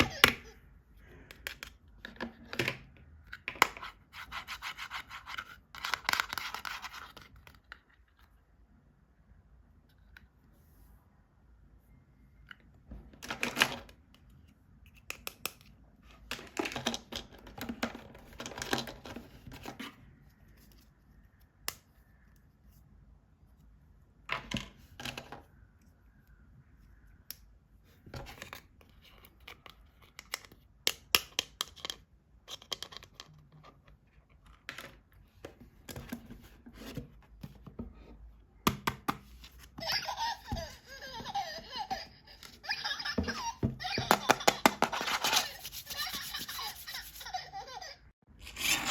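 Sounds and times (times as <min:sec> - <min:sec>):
clicks and taps of toys: 0:14.9 - 0:15.7.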